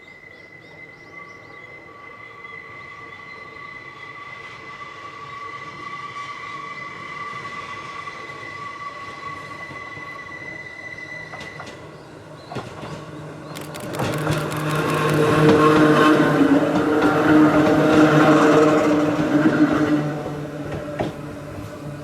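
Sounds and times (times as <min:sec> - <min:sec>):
traction motor hum: 0:13.6 - 0:15.5.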